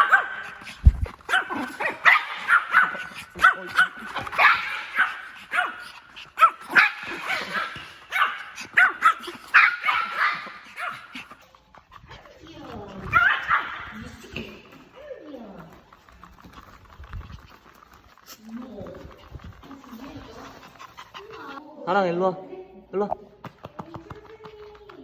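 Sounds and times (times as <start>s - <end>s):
dog barking: 0.0s - 0.7s, 1.3s - 11.4s, 13.1s - 14.0s.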